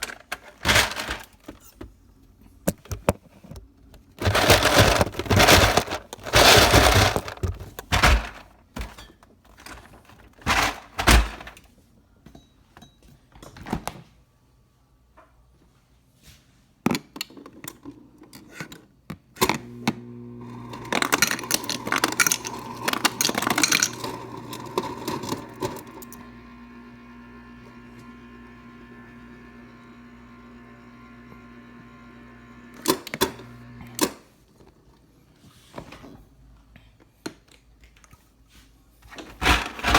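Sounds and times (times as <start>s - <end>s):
ice crushing: 0.0s - 1.3s, 4.2s - 8.5s, 20.0s - 26.5s, 39.4s - 39.9s
ice cubes clattering: 0.0s - 1.4s, 4.2s - 8.5s, 10.4s - 11.6s, 20.5s - 26.3s, 39.4s - 39.9s
dispenser motor humming: 19.6s - 34.0s.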